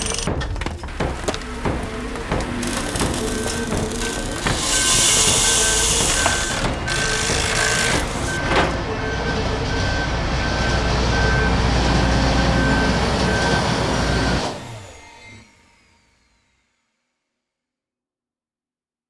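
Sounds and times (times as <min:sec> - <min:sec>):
heavy vehicle engine rumbling: 0:00.0 - 0:14.5
reversing alarm beeping: 0:00.0 - 0:15.2.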